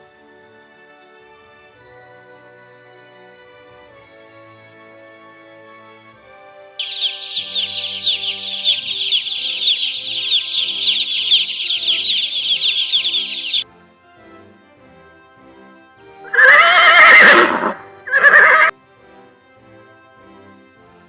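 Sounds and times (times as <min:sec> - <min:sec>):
quiet background music: 0:00.0 - 0:21.0
chicks peeping: 0:06.8 - 0:13.6.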